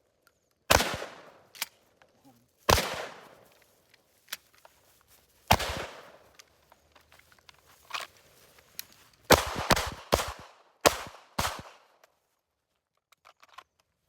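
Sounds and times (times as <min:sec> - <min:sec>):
shotgun shots: 0:00.7 - 0:01.5, 0:02.7 - 0:03.4, 0:05.5 - 0:06.2, 0:09.3 - 0:11.9.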